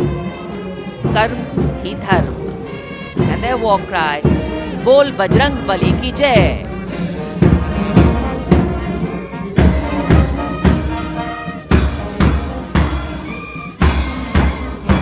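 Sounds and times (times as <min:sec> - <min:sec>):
military brass band march: 0:00.0 - 0:15.0
bass drum beating: 0:03.2 - 0:06.8, 0:11.7 - 0:13.2.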